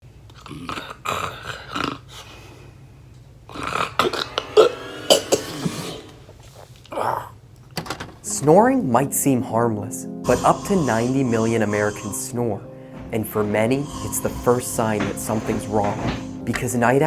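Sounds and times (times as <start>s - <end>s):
person snoring loudly: 10.2s - 16.8s.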